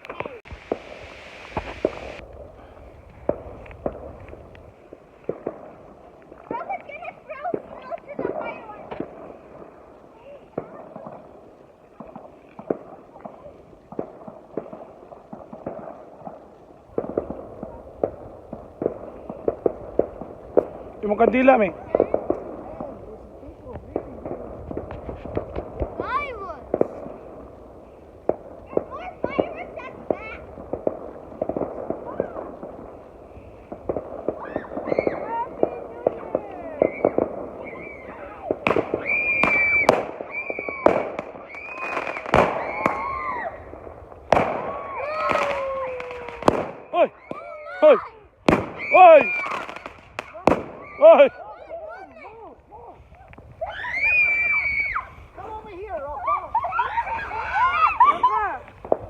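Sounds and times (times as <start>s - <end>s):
whistling firework shells: 0.0s - 2.2s, 30.8s - 35.4s, 36.4s - 47.5s, 48.5s - 51.0s
fireworks cracking and popping: 0.0s - 59.0s.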